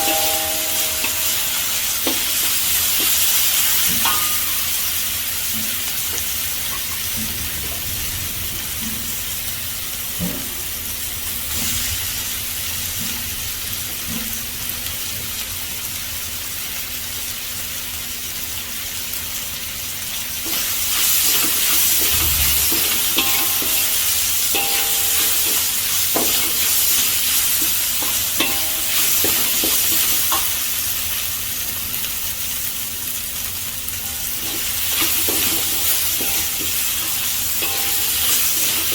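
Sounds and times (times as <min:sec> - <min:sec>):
vegetables sizzling in a pan: 0:00.0 - 0:38.9
utensil stirring and scraping pan: 0:20.4 - 0:30.6, 0:34.0 - 0:38.9.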